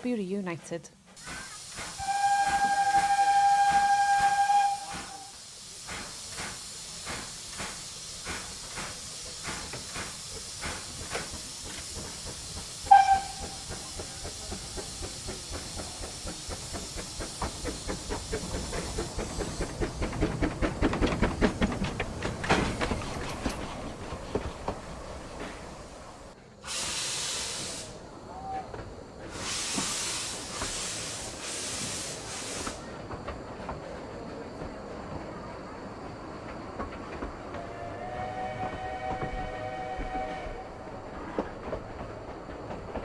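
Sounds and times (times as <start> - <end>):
steam locomotive exhaust beats: 1.0 - 34.8, 36.4 - 43.0
steam hissing: 1.1 - 33.4
steam locomotive whistle: 1.9 - 5.4, 12.8 - 14.0, 26.6 - 28.6, 37.6 - 40.9.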